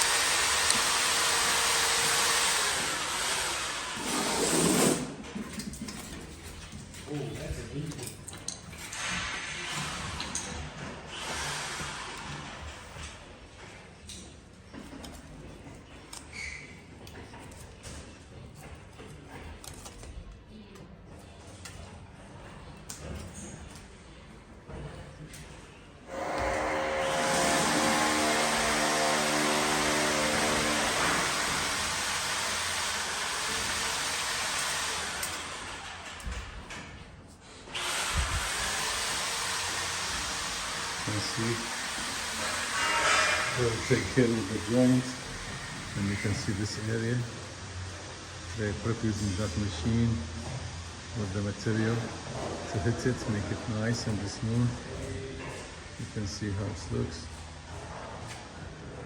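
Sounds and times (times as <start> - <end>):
power tool hissing: 26.1 - 36.0, 37.7 - 46.9
high squeak: 42.4 - 45.0.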